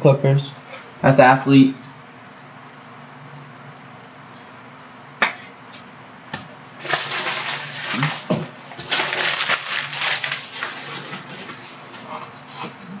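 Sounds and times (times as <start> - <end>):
plastic wrapper crinkling and tearing: 6.8 - 11.8.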